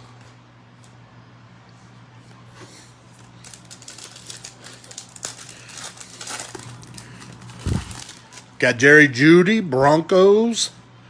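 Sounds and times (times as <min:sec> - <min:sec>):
steady low hum: 0:00.0 - 0:11.0
wrapper crinkling: 0:03.1 - 0:08.6
cards being handled: 0:03.2 - 0:08.5.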